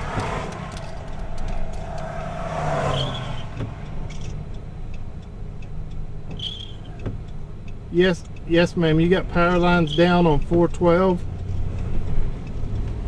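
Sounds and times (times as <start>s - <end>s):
rushing noise swells: 0.0s - 4.8s
car engine and road noise: 0.0s - 13.0s.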